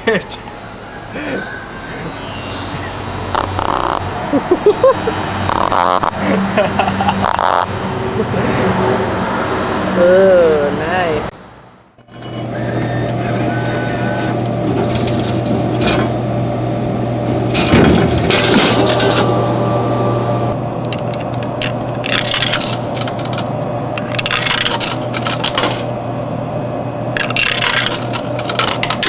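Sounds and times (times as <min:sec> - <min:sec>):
vibrator buzzing: 0:00.0 - 0:29.0
rattling and clinking: 0:20.9 - 0:25.9, 0:27.2 - 0:29.0.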